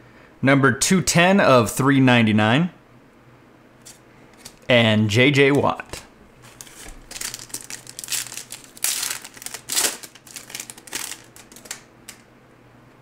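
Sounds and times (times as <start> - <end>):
wrapper crinkling and tearing: 5.9 - 12.3.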